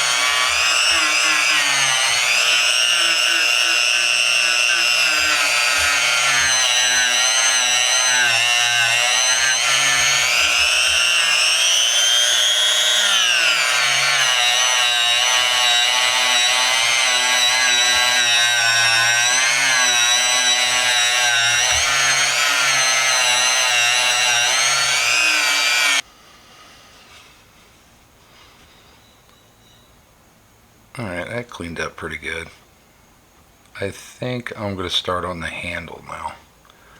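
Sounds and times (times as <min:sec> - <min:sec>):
power tool whining against metal: 0:00.0 - 0:26.0.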